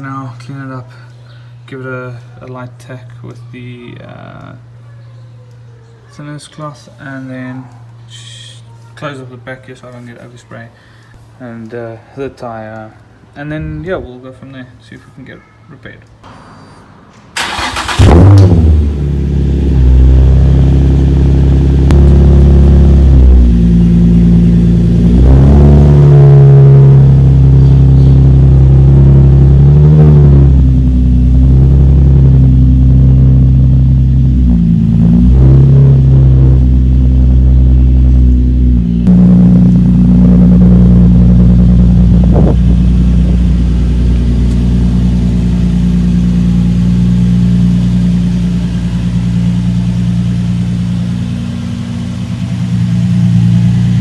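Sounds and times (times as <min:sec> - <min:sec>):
car engine idling and revving: 0:17.4 - 0:54.0.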